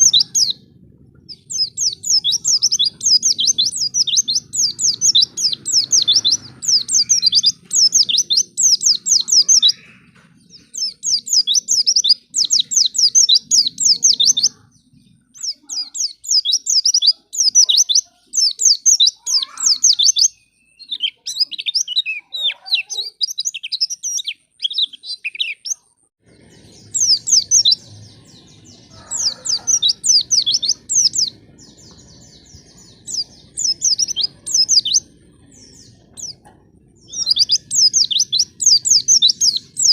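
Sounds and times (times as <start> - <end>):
faint low rumble: 0.0 - 6.9, 26.2 - 39.8
bird chirping song: 0.0 - 39.9.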